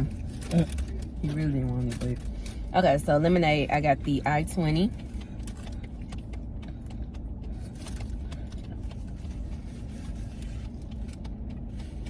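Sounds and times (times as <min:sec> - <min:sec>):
car engine rumble inside cabin: 0:00.0 - 0:12.0.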